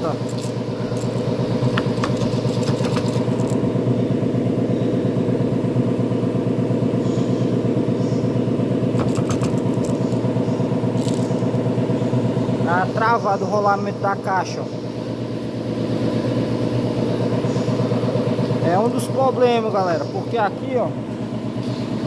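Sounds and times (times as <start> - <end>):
engine and gearbox clattering: 0.0 - 3.9, 8.7 - 14.6.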